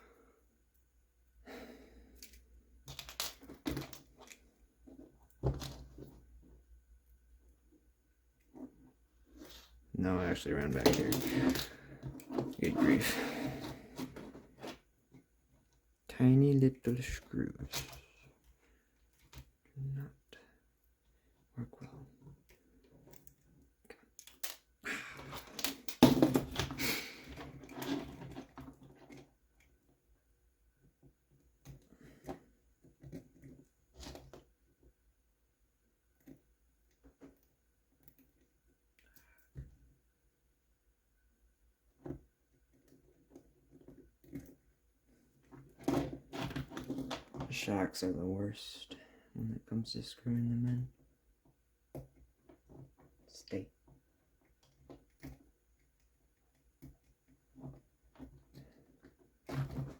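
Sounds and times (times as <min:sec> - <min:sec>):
small parts clicking and rustling: 0:02.0 - 0:06.5, 0:10.4 - 0:12.8, 0:16.8 - 0:19.7, 0:22.2 - 0:30.0, 0:41.9 - 0:47.6.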